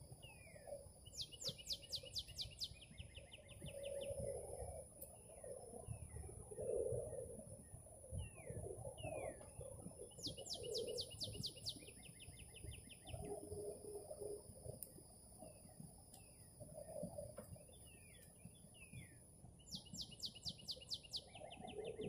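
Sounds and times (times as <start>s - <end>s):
low bird calls: 0.0s - 22.0s.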